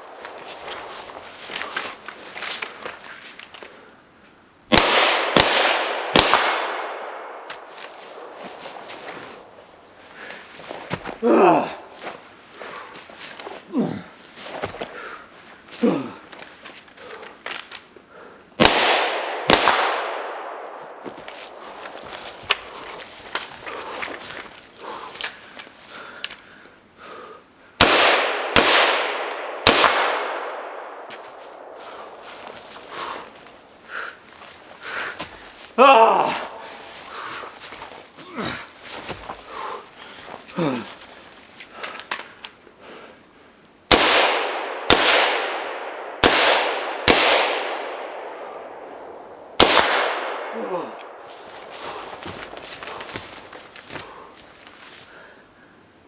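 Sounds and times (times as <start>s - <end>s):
handling clicks and rustles: 0.0s - 4.4s, 7.4s - 11.2s, 11.8s - 18.1s, 20.5s - 26.4s, 31.0s - 42.8s, 51.0s - 55.1s
rifle shots with echo: 4.7s - 7.5s, 18.6s - 21.0s, 27.8s - 31.7s, 43.9s - 51.2s.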